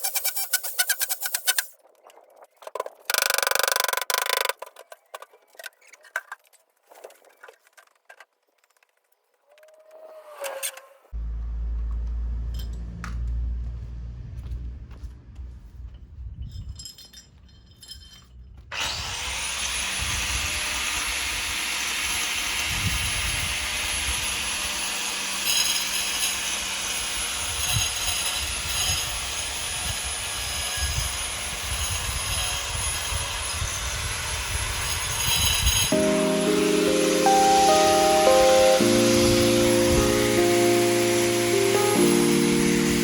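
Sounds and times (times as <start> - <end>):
power tool whining while cutting: 18.7 - 43.0.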